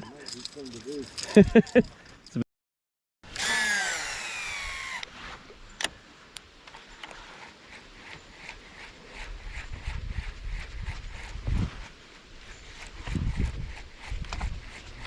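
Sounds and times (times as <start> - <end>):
fishing reel spool whirring: 3.3 - 5.1.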